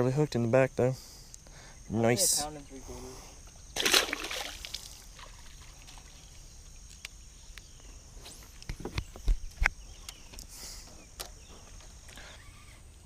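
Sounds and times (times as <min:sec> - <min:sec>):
water splash: 0:03.8 - 0:06.2.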